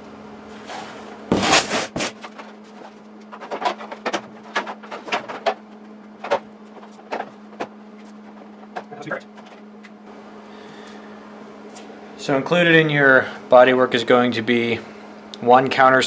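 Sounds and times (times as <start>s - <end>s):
steady low hum: 0.0s - 16.0s
loud rustle: 0.6s - 3.8s.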